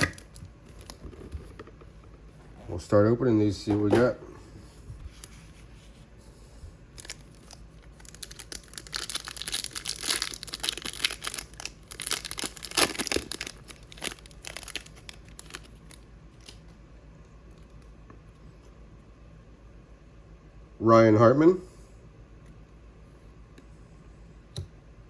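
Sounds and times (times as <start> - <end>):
faint handling sounds: 0.0 - 8.7
wrapper tearing and crinkling: 7.0 - 16.6.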